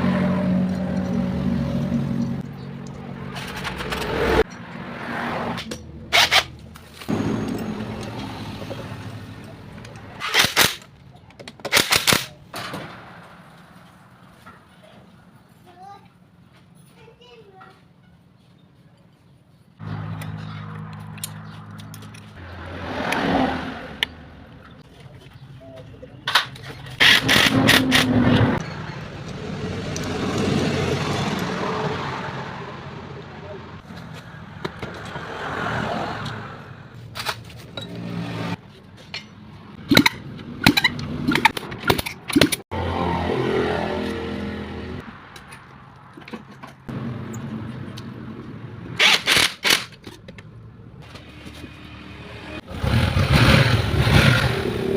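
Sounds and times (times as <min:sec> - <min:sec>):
steady engine sound: 0:05.6 - 0:10.5
motorcycle engine revving: 0:39.8 - 0:45.0, 0:51.1 - 0:54.9.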